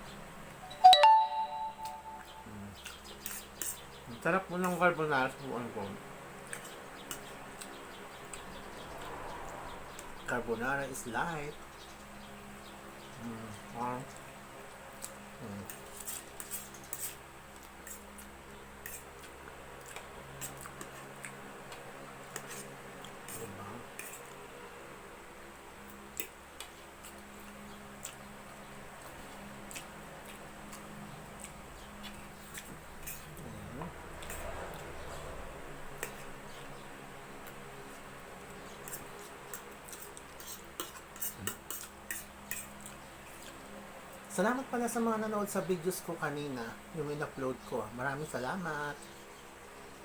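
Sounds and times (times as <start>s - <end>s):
light sharp eating clicks: 6.4s - 10.2s, 14.9s - 24.4s, 25.8s - 35.3s, 35.9s - 36.6s, 37.4s - 44.3s
person chewing: 28.0s - 28.3s, 29.0s - 34.8s.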